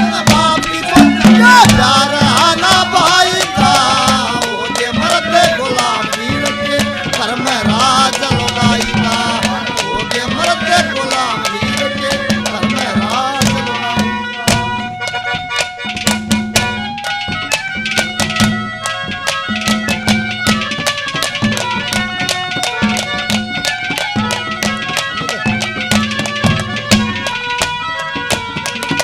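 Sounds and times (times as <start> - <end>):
person singing: 0.0 - 14.7
fast hand-drum strokes: 0.0 - 29.0
folk melody: 0.0 - 29.0.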